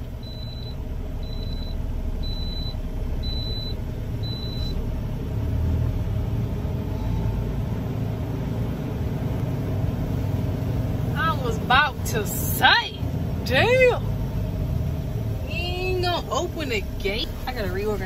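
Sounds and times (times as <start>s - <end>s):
diesel truck engine rumble: 0.0s - 18.0s
high warning beeps: 0.2s - 4.8s.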